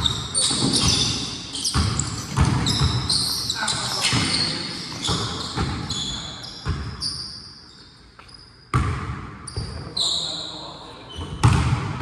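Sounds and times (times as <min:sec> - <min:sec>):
basketball bouncing on gym floor: 0:00.0 - 0:07.2, 0:08.7 - 0:09.9, 0:11.1 - 0:12.0.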